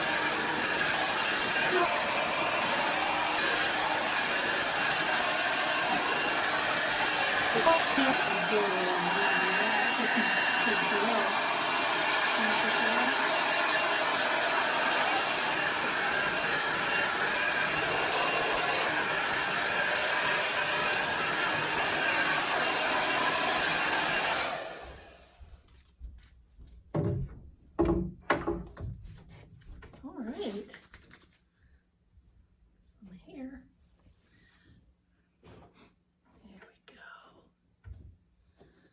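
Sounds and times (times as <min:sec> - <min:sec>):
blow dryer running: 0:00.0 - 0:25.4.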